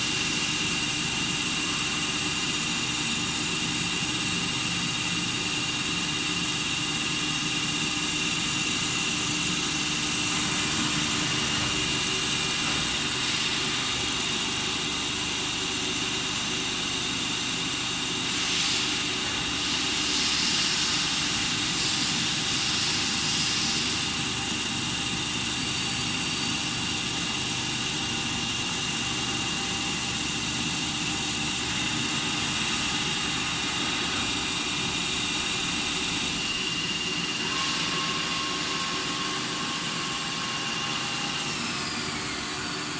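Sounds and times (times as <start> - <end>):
welding machine running: 0.0 - 42.9
loud hiss: 18.2 - 24.0.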